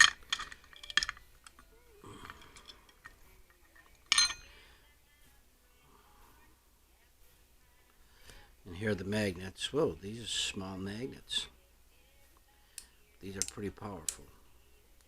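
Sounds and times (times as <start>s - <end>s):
small metal parts clinking: 0.0s - 4.5s.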